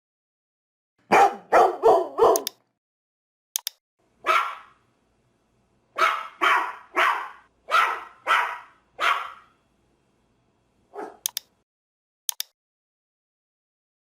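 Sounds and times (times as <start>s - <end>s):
dog barking: 1.1s - 2.6s, 4.2s - 4.8s, 6.0s - 9.6s, 10.9s - 11.3s
short click: 2.4s - 2.6s, 3.6s - 3.8s, 11.2s - 11.5s, 12.3s - 12.6s.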